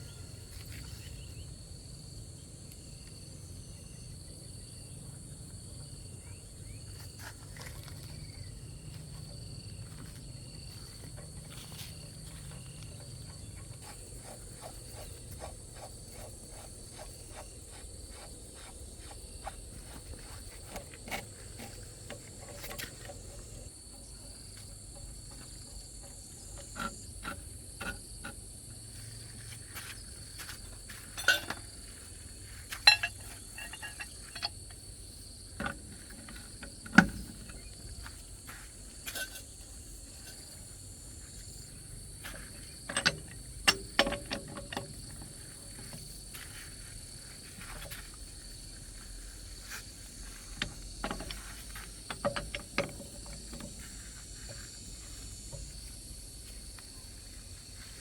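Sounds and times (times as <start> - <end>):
high-pitched insect drone: 45.0 - 58.0.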